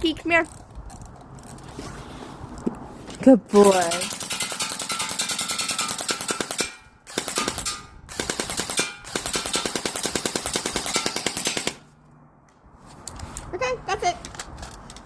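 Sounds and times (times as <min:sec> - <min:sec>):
airsoft rifle firing bursts: 0:04.0 - 0:11.8.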